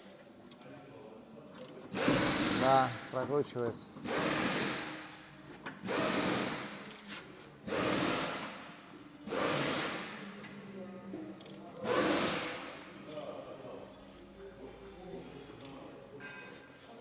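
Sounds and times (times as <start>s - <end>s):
impact wrench bursts: 1.9s - 3.2s, 4.0s - 5.2s, 5.8s - 8.7s, 9.3s - 10.3s, 11.4s - 13.2s.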